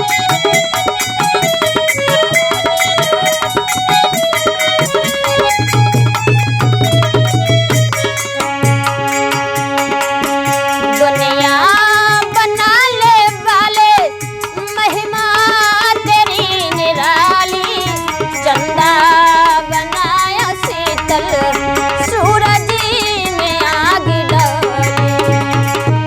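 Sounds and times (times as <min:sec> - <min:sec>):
held instrumental notes: 0:00.0 - 0:26.0
person singing: 0:10.8 - 0:26.0.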